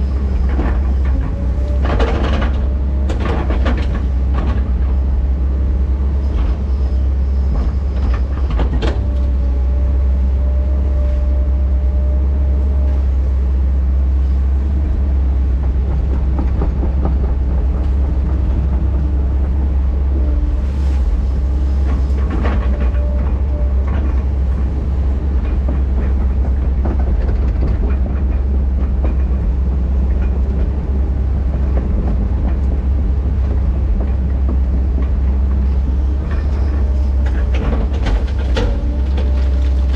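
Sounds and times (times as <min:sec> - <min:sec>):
diesel engine low drone: 0:00.0 - 0:39.9.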